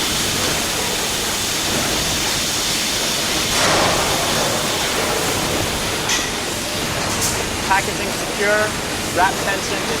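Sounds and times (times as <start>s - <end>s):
machine hiss: 0.0s - 6.9s.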